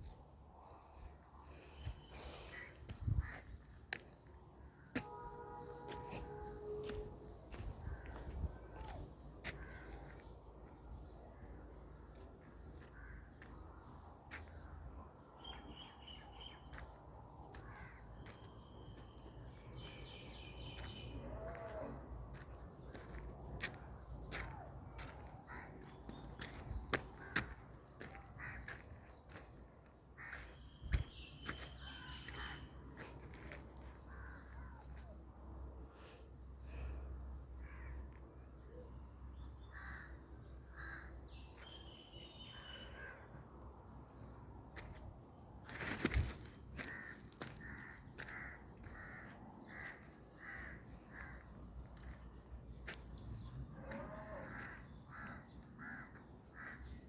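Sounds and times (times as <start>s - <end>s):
crows cawing: 2.5s - 4.0s, 5.8s - 10.3s, 12.1s - 13.6s, 17.5s - 18.5s, 20.7s - 29.4s, 30.2s - 35.1s, 37.6s - 38.2s, 39.7s - 41.6s, 45.7s - 52.2s, 53.8s - 57.0s.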